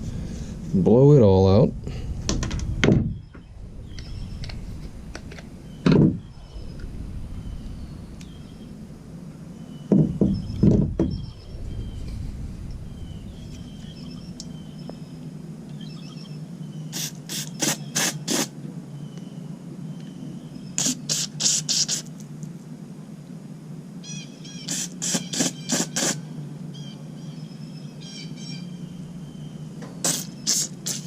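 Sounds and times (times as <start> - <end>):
steady low hum: 0.0 - 31.0
hissing spray blasts: 16.9 - 18.6, 20.8 - 22.1, 24.6 - 26.3, 30.0 - 31.0.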